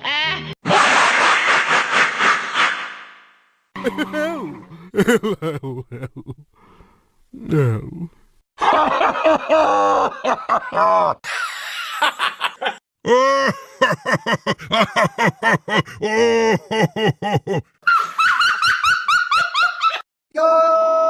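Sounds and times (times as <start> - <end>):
cartoon character laughing: 3.8 - 6.4, 8.7 - 20.0
breathy hissing: 6.4 - 8.2.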